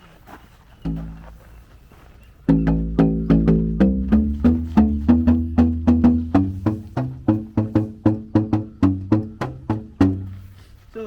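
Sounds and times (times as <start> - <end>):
plastic tapping instrument notes: 0.9 - 1.5, 2.5 - 10.4.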